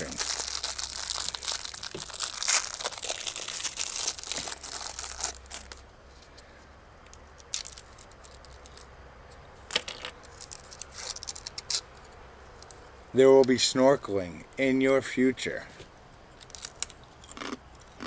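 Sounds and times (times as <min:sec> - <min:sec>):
cookie cracking: 0:00.0 - 0:05.8, 0:16.4 - 0:18.0
plastic wrapper tearing and crinkling: 0:00.0 - 0:05.8, 0:07.4 - 0:08.8, 0:09.7 - 0:11.8, 0:16.4 - 0:17.0.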